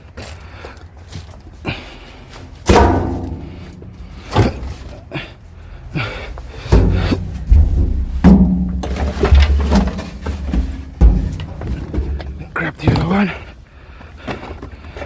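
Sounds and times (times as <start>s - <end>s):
scrap metal thuds and knocks: 2.4s - 5.3s, 6.0s - 13.6s.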